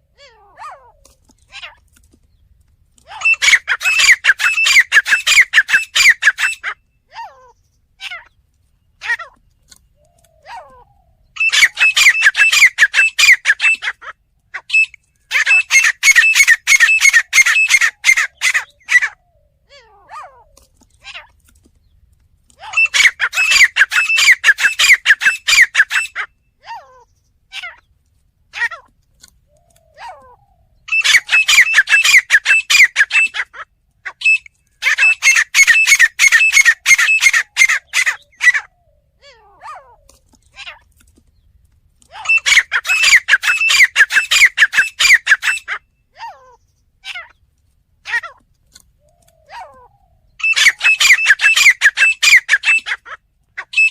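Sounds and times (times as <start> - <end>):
francolin calling: 3.1 - 8.2, 8.9 - 14.0, 14.6 - 19.7, 22.6 - 26.4, 29.5 - 33.5, 34.1 - 39.2, 42.2 - 46.1, 49.0 - 53.0, 53.6 - 53.9.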